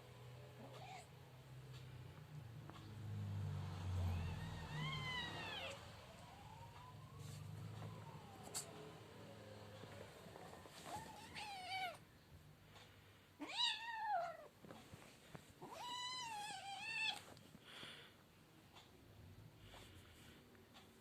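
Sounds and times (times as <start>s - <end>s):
cat meowing: 0.6s - 1.1s, 4.0s - 5.8s, 10.9s - 12.0s, 13.4s - 14.5s, 15.6s - 17.2s.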